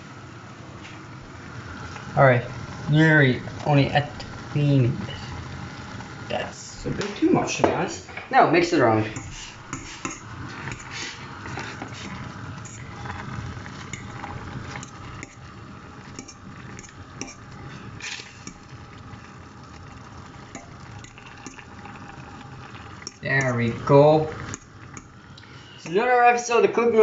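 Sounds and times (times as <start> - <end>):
steady hiss: 0.0 - 27.0
utensil scraping pan: 9.1 - 15.5, 16.1 - 18.6.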